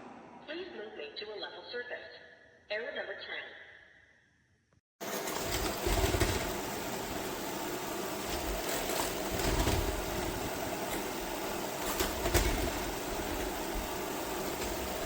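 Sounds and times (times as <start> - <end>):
robot vacuum whirring: 5.0 - 15.0.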